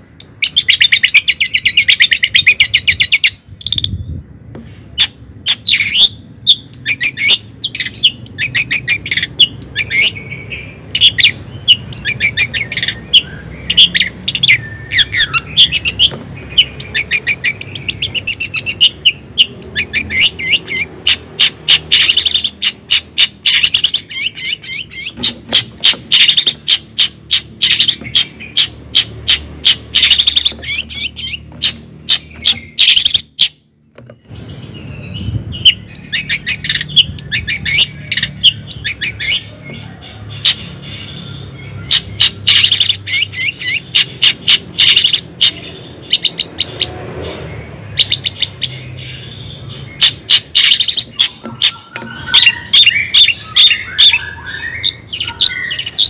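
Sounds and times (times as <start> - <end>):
bird chirping high notes: 5.0 - 56.0.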